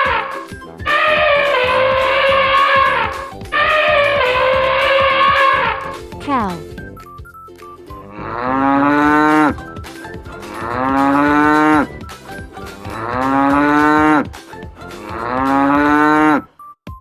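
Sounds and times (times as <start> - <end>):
cow mooing: 0.0 - 6.0, 8.1 - 9.6, 10.4 - 11.9, 12.8 - 14.3, 15.0 - 16.5.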